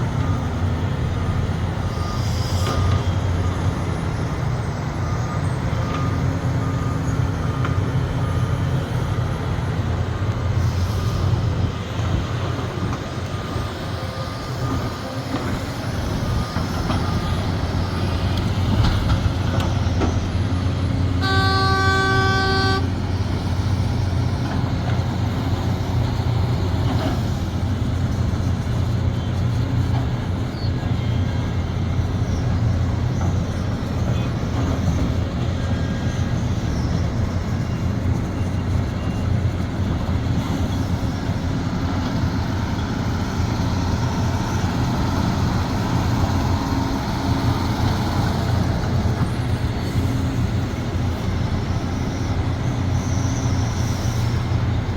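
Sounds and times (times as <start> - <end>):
excavator diesel engine running: 0.0 - 54.9
horn blast: 21.2 - 23.0.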